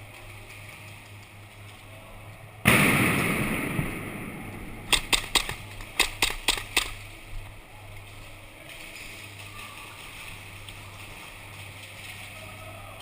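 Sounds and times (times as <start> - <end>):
loud blast: 2.6 - 5.7
airsoft gunfire pops: 2.7 - 7.0.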